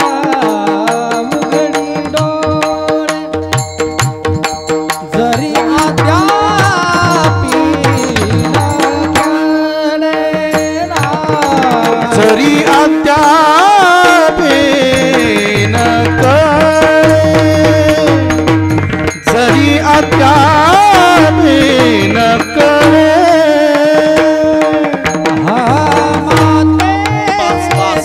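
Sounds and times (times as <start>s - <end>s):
man singing wordless notes: 0.0s - 4.0s, 4.9s - 28.0s
tabla strokes: 0.0s - 28.0s.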